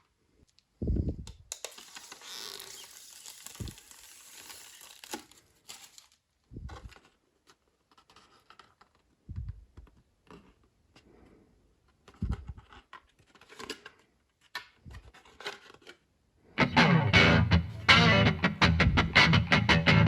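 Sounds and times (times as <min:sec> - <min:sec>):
hands rustling packaging: 0:01.3 - 0:11.2.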